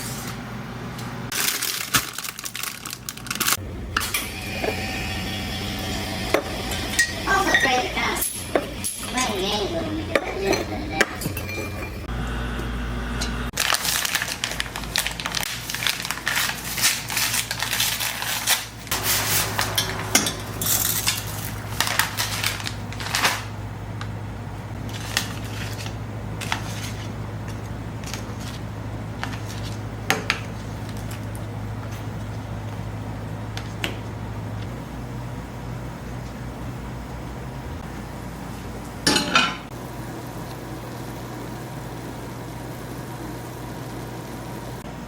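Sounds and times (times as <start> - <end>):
low hum: 3.6 - 13.5, 18.9 - 24.8
utensils clinking against pots: 6.3 - 12.1, 19.0 - 22.4, 39.0 - 39.7.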